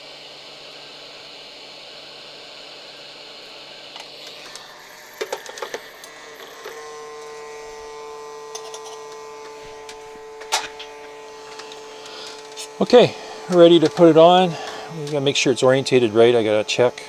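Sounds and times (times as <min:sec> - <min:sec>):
hot-air station blowing air: 0:00.0 - 0:17.0
steady hum: 0:03.4 - 0:17.0.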